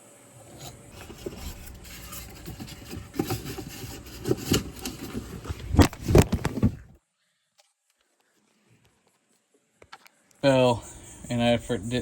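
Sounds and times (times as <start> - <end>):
steady rumble: 0.5 - 6.9.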